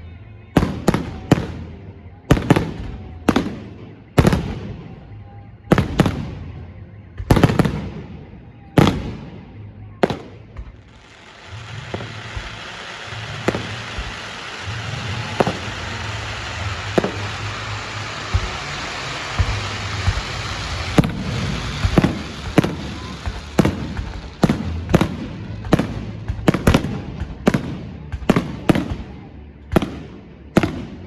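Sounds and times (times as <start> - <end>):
fireworks bangs echoing: 0.5 - 31.0
steady hiss: 10.7 - 26.5.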